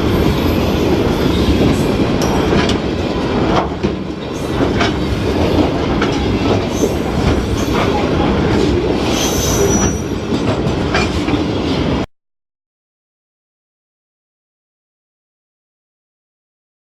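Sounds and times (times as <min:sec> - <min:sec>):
train wheel squeal: 0:00.0 - 0:02.6, 0:04.3 - 0:08.1, 0:09.0 - 0:11.2
train rumbling past: 0:00.0 - 0:12.1.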